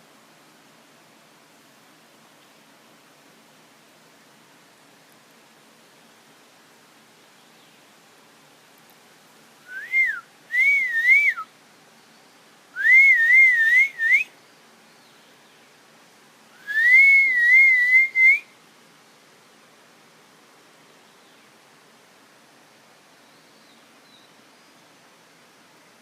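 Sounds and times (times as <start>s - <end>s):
person whistling phrases: 9.7s - 11.5s, 12.8s - 14.3s, 16.6s - 18.4s.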